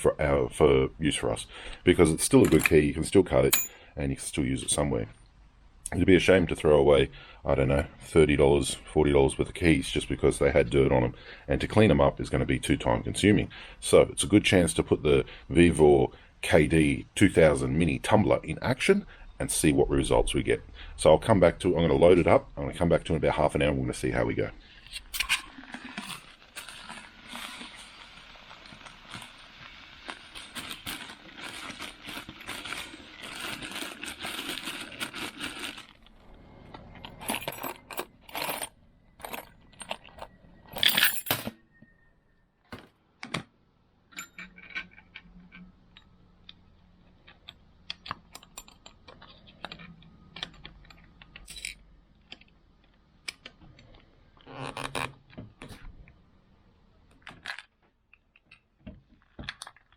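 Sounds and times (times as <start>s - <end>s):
metal keys rattling and clinking: 2.4s - 2.8s, 37.0s - 41.5s, 50.4s - 51.8s.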